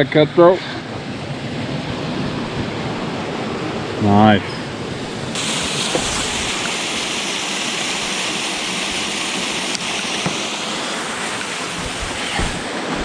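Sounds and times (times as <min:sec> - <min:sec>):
small waterfall rushing: 0:05.0 - 0:13.0.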